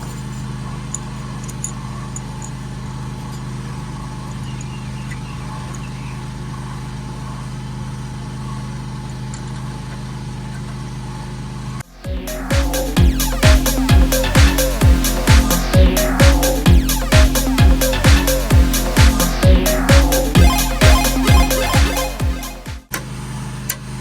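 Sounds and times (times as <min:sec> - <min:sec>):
low mechanical hum: 0:00.0 - 0:12.2.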